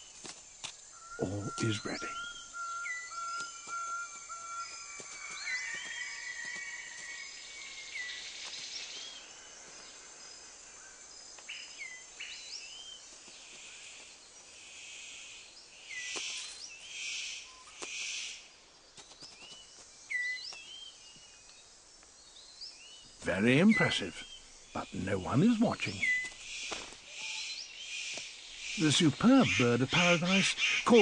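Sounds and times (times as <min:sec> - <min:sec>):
insect hiss: 0:00.0 - 0:31.0
whistled bird calls: 0:00.9 - 0:09.2, 0:23.3 - 0:31.0.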